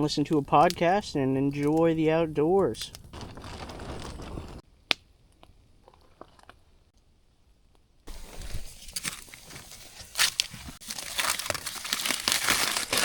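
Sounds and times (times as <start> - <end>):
campfire crackling and popping: 0.0 - 7.1.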